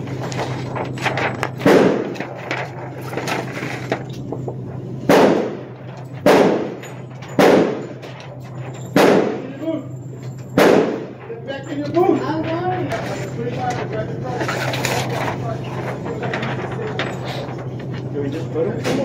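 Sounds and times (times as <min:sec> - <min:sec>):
gunshots ringing indoors: 0:01.5 - 0:02.4, 0:05.0 - 0:11.3.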